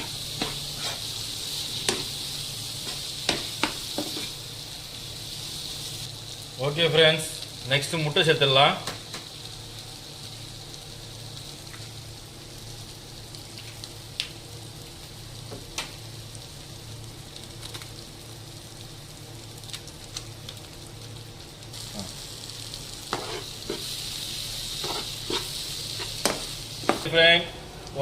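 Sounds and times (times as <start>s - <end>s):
spatula tapping and scraping: 0.0s - 1.0s, 23.1s - 23.9s, 24.8s - 27.1s
food sizzling in oil: 0.0s - 28.0s.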